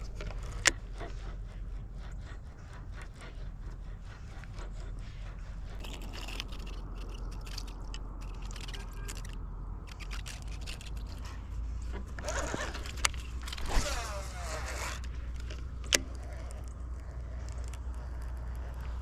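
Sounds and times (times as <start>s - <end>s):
fishing reel clicking and whirring: 0.0s - 1.1s, 5.8s - 11.3s, 12.0s - 19.0s.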